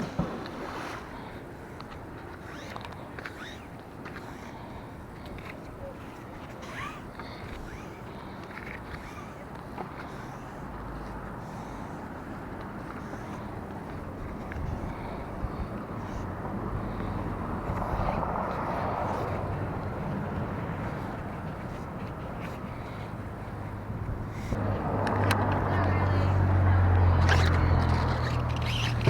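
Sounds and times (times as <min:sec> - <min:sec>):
low traffic rumble: 0:00.0 - 0:29.0
vehicle passing: 0:10.0 - 0:29.0.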